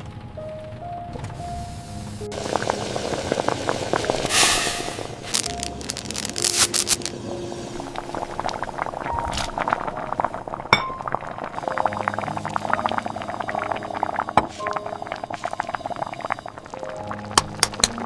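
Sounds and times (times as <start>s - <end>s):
glass and kitchenware clinking: 10.7s - 11.1s.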